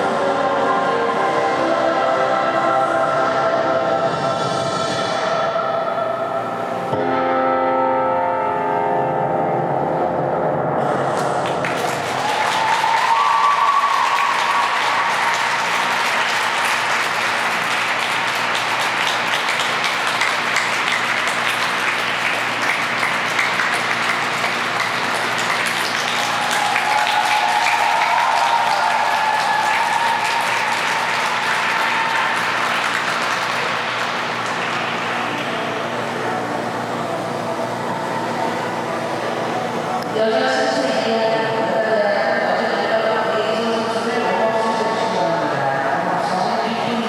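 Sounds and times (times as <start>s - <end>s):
crowd applauding: 11.1s - 41.7s.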